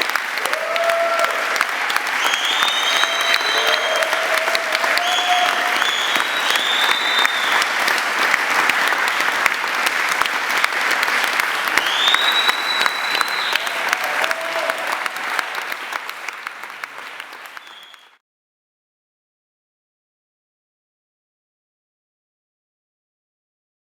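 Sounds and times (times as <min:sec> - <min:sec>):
audience applauding: 0:00.0 - 0:18.2
whistles and cheers: 0:00.1 - 0:08.0, 0:11.6 - 0:16.2, 0:17.0 - 0:18.2.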